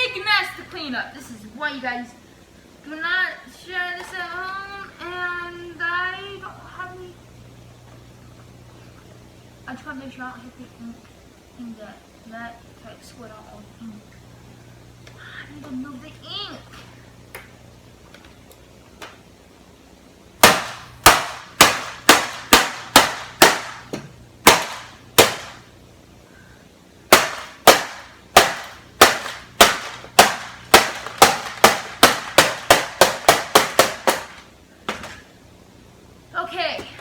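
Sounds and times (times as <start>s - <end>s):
hammer smashing plastic: 20.4s - 25.7s, 27.1s - 35.2s.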